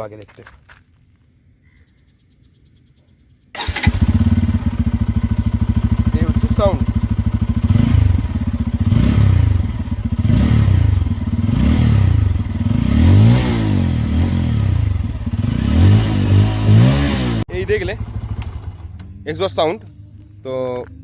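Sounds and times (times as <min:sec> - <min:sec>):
motorcycle engine revving: 0:03.6 - 0:19.2.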